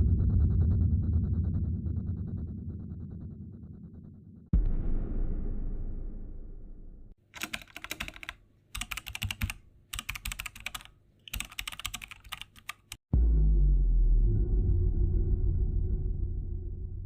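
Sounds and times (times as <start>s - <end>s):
low rumble: 0.0s - 7.2s, 13.1s - 17.0s
computer keyboard typing: 7.3s - 13.0s.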